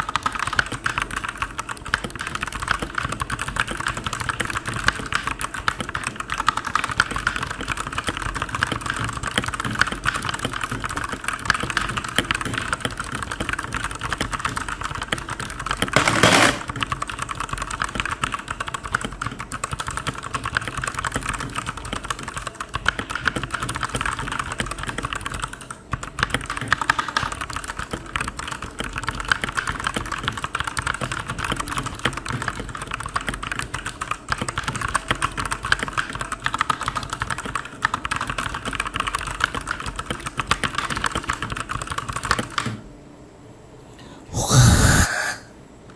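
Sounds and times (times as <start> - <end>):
typing on mechanical keyboard: 0.0 - 42.8
keyboard clatter: 0.1 - 20.3.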